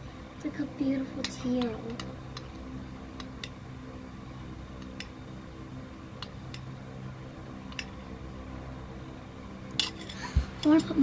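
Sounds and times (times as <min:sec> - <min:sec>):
steady low hum: 0:00.0 - 0:11.0
utensils clicking and tapping: 0:01.2 - 0:02.6, 0:09.7 - 0:11.0.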